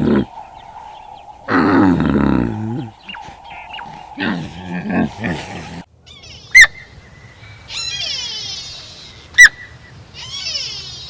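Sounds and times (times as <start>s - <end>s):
thin steady whistle: 0.0s - 4.4s
bird squawks: 0.0s - 5.8s
fast high bird trill: 0.0s - 5.8s
low animal growl: 0.0s - 5.9s.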